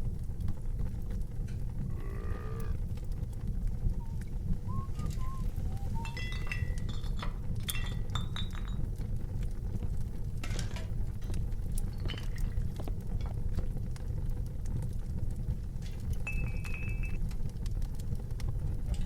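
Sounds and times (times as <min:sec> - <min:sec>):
glasses and crockery clinking: 0:05.8 - 0:08.8.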